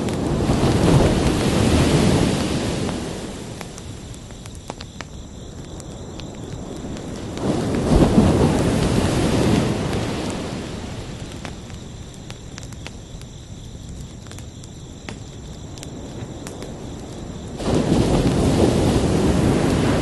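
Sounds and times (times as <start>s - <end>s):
crickets chirring: 0.0s - 20.0s
faint ticks: 3.6s - 7.5s.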